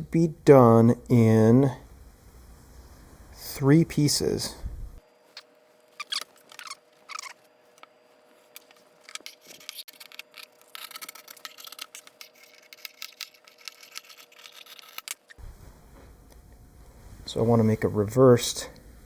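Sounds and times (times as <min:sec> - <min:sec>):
paper rustling: 0:05.2 - 0:15.4
small clicks: 0:05.4 - 0:15.4.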